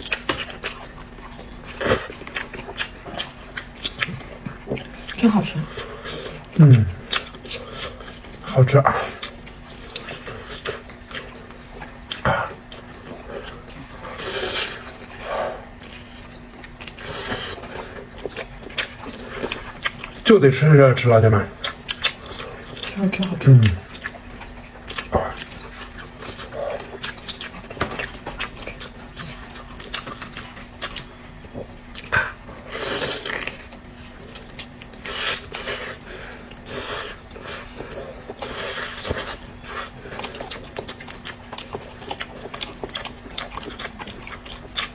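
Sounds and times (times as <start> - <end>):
person chewing food: 0.0 - 20.2, 21.2 - 44.9.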